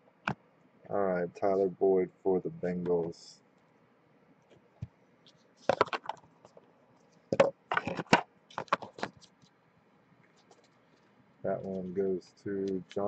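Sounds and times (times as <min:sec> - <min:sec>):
objects clacking on tabletop: 0:05.6 - 0:06.6, 0:07.3 - 0:09.4.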